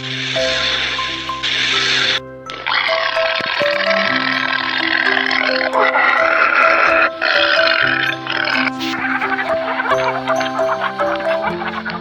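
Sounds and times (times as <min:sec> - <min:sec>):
music of held notes: 0:00.0 - 0:12.0
animal call: 0:04.4 - 0:12.0.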